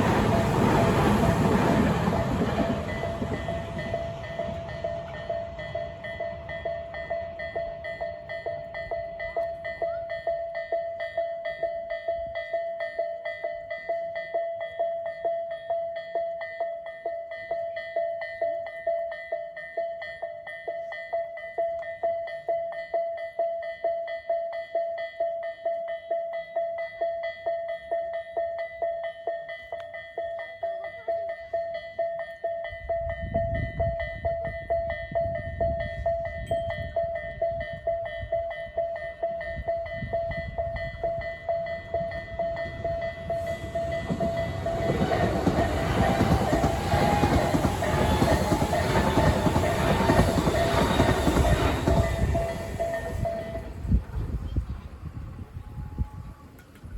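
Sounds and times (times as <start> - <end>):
train rumbling and clattering: 0.0 - 10.6, 32.7 - 56.9
level crossing warning bell: 0.0 - 54.2.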